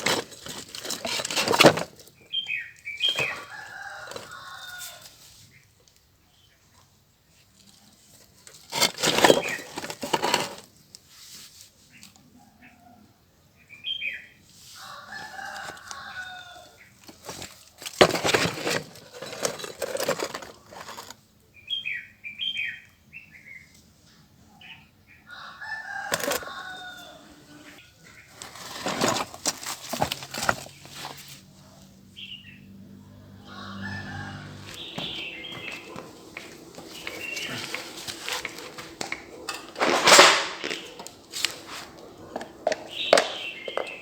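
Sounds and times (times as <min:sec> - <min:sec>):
rooster crowing: 0:03.2 - 0:05.2, 0:14.8 - 0:16.8, 0:25.3 - 0:27.8, 0:33.1 - 0:39.7.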